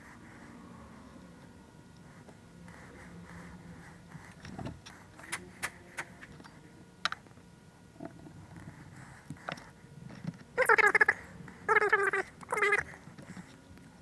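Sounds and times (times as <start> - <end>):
faint steady hum: 0.0 - 14.0.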